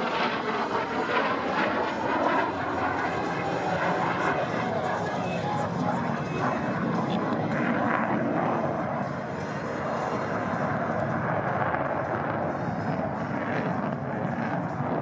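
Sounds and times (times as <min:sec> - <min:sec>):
jet engine in flight: 0:00.0 - 0:15.0.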